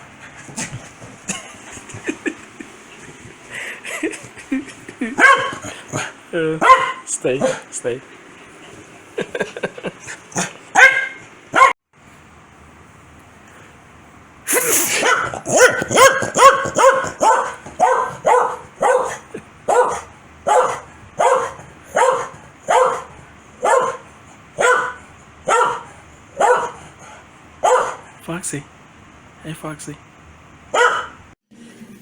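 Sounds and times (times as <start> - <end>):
dog barking angrily: 5.2 - 7.7, 10.0 - 11.8, 14.6 - 28.2, 30.7 - 31.2.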